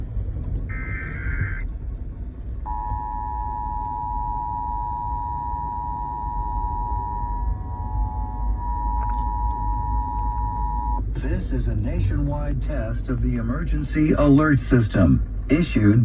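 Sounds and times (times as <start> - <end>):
low rumble: 0.0 - 16.0
two-tone attention signal: 2.7 - 11.0.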